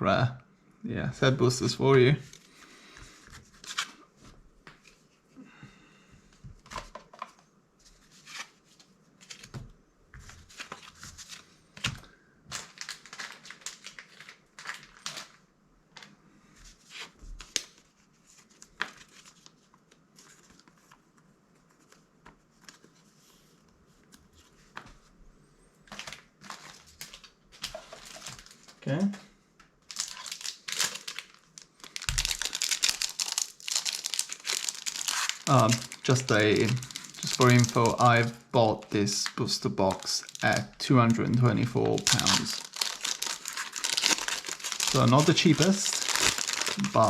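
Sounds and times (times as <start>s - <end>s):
foil wrapper crinkling: 12.5s - 15.4s, 29.9s - 47.0s
trading cards being handled: 29.9s - 47.0s.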